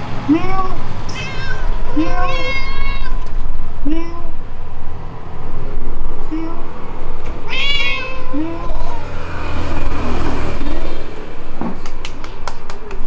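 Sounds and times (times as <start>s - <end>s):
man imitating meows: 0.3s - 3.2s, 7.6s - 9.0s
cat meowing: 0.3s - 4.4s, 7.4s - 9.2s.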